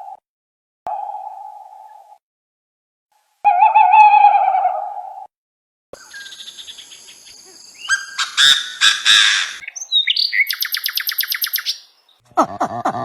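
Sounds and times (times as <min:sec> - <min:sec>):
birds calling: 0:06.0 - 0:12.2.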